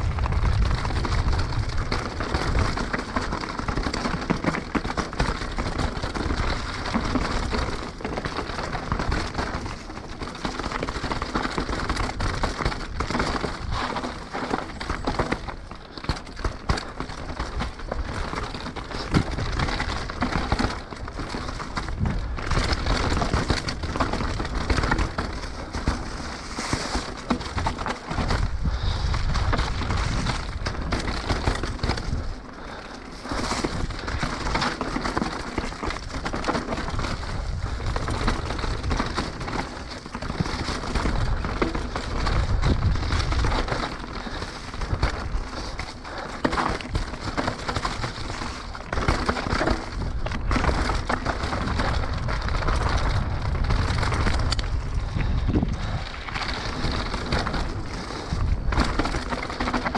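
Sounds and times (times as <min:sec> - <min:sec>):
mountain bike parts rattling: 0:00.1 - 0:59.9.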